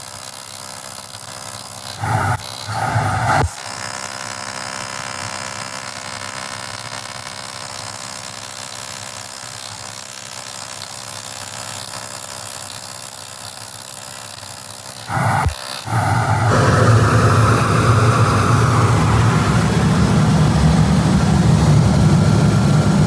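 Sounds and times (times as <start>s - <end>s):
welding arc buzzing: 1.8s - 3.6s, 14.9s - 23.0s.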